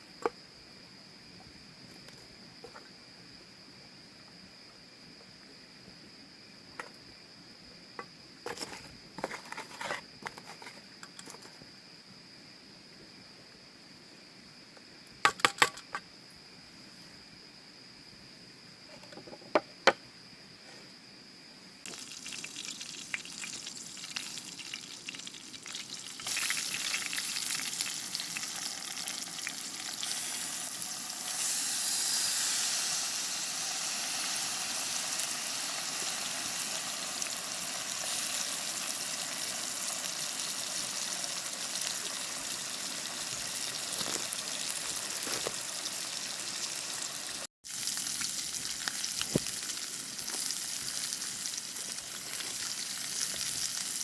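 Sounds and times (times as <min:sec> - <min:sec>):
food sizzling in frying pan: 0:21.9 - 0:54.0.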